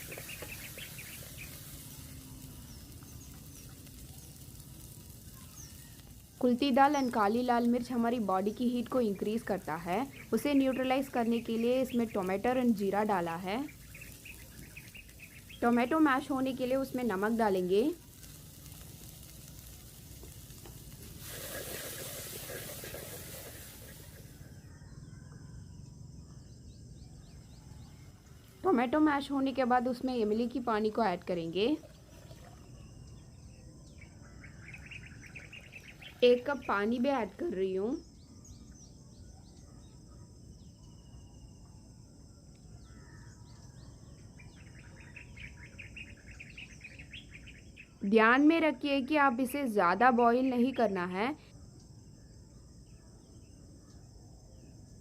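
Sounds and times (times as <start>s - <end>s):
food sizzling in oil: 0.0s - 24.5s
high insect drone: 0.0s - 30.8s
faint bird chirps: 0.0s - 55.0s.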